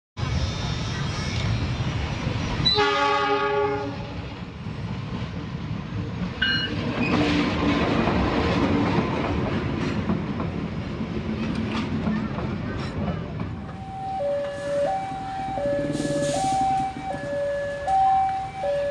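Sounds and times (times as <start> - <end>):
train horn: 2.6 - 4.2, 14.1 - 17.0
train wheels clattering on rails: 4.2 - 18.9.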